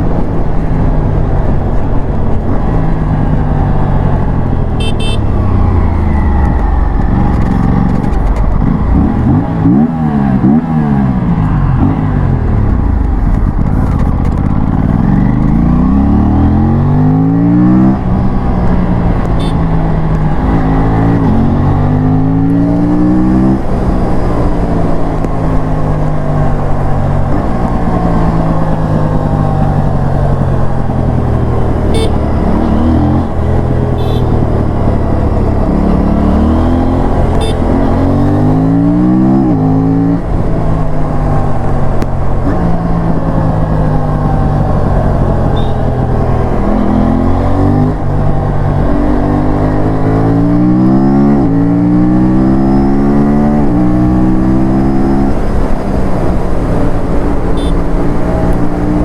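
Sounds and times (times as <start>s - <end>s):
motorcycle engine revving through gears: 0.0s - 59.0s.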